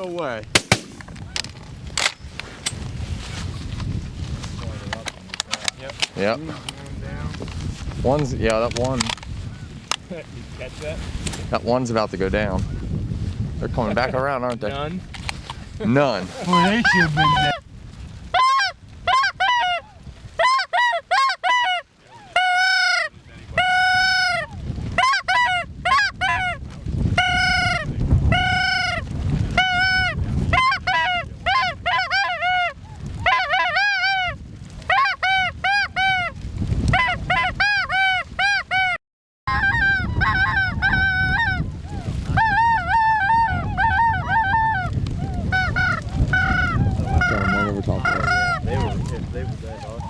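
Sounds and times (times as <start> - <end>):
wind rumble on microphone: 0.2 - 20.4, 23.1 - 50.0
geese honking: 16.4 - 17.6, 18.3 - 26.6, 27.2 - 50.0.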